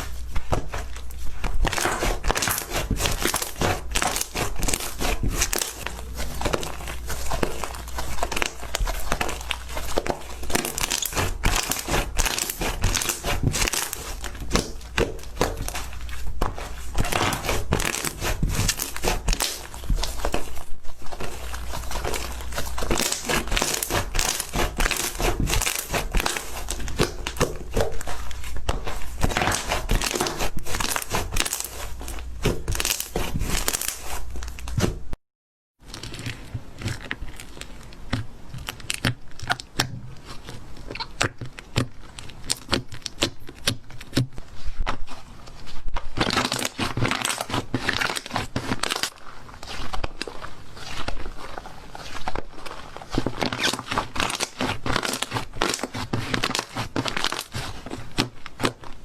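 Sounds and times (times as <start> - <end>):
slime squeezed by hand: 0.0 - 35.0.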